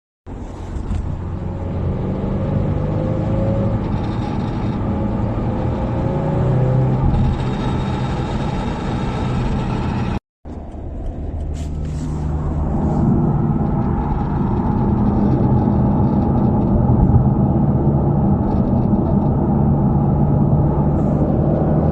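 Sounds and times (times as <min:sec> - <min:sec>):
car engine and road noise in cabin: 0:00.3 - 0:21.9
low exhaust drone: 0:07.0 - 0:21.9.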